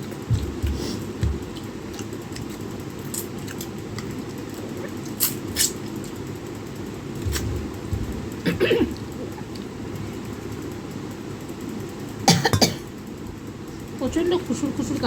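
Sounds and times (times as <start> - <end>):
person eating: 0.0 - 10.3
low background rumble: 0.0 - 15.0
soft thumps: 0.3 - 1.6, 7.2 - 9.1.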